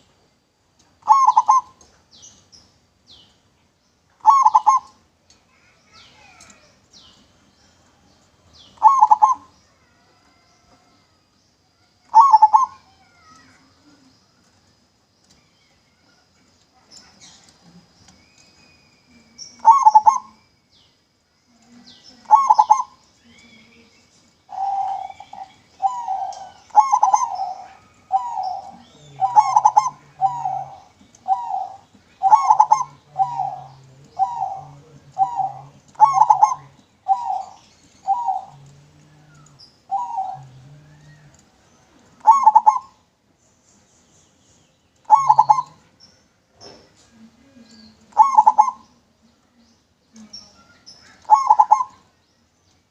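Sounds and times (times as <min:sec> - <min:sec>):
dove cooing: 0:01.0 - 0:01.8, 0:04.2 - 0:05.0, 0:08.8 - 0:10.0, 0:12.1 - 0:13.4, 0:19.5 - 0:20.4, 0:22.2 - 0:23.0, 0:24.5 - 0:41.5, 0:42.2 - 0:43.0, 0:45.1 - 0:45.8, 0:48.1 - 0:48.9, 0:51.1 - 0:52.1.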